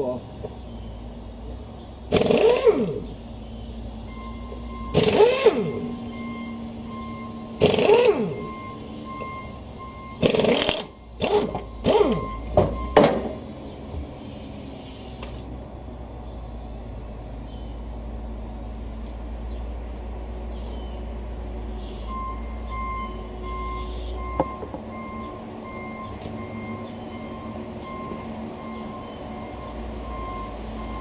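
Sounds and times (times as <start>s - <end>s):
power tool bursts: 2.0s - 3.5s, 4.8s - 15.4s.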